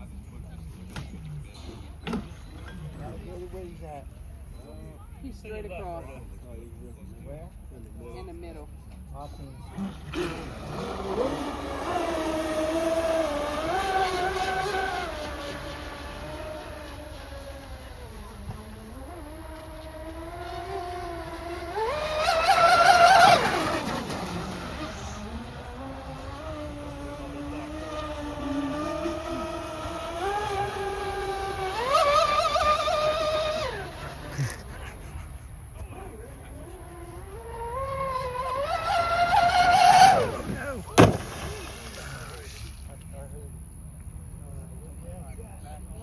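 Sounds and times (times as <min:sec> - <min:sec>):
electric boat motor whining: 0:09.4 - 0:42.7.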